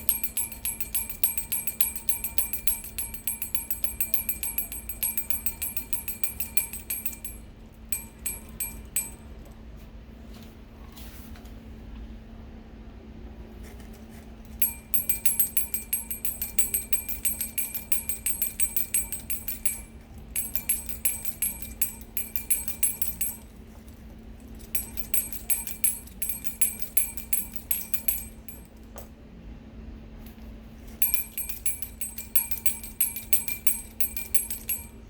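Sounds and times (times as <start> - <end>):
high-pitched bell ringing rapidly: 0.0 - 9.4, 14.6 - 23.6, 24.6 - 28.7, 31.0 - 35.0
faint steady hum: 0.0 - 35.0.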